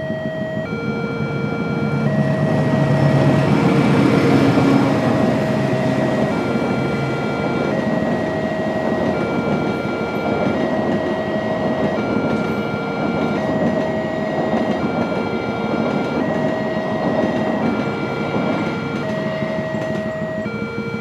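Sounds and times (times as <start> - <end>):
level crossing two-tone alarm: 0.0 - 21.0
train rumbling past: 0.0 - 21.0.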